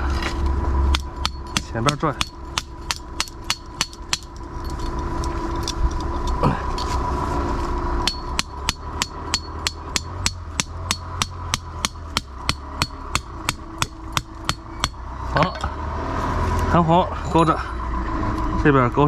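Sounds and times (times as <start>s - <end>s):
hammer striking metal stake: 0.9s - 4.8s, 8.0s - 15.7s.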